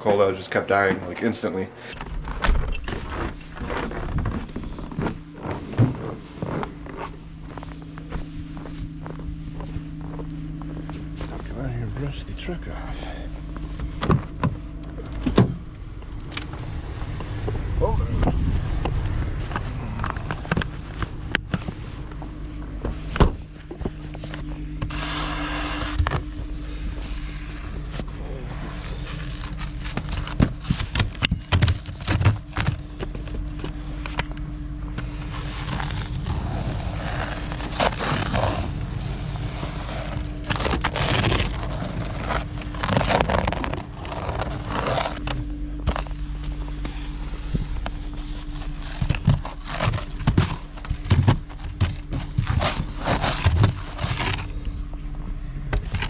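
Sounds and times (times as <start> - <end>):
truck engine idling: 0.0 - 56.0
snow brushed and scraped off: 24.2 - 32.1, 35.0 - 45.2, 45.9 - 54.6.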